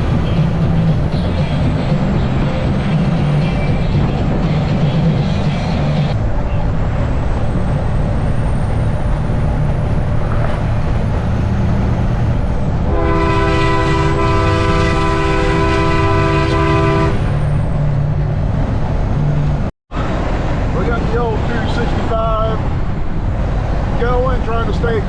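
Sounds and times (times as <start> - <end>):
road noise: 0.0 - 25.0
truck engine drone: 0.0 - 25.0
multi-tone air horn: 12.9 - 17.3.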